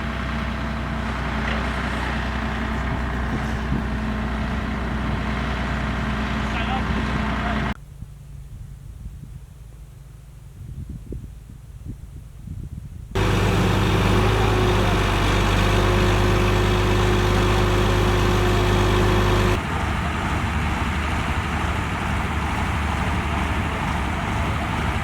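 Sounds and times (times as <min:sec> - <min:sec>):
vehicle engine running: 0:00.0 - 0:07.8, 0:13.2 - 0:25.0.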